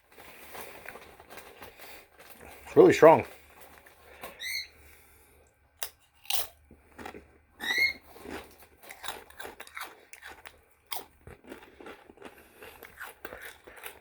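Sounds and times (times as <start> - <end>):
chewing crunchy tortilla chips: 0.0 - 4.4, 5.4 - 14.0.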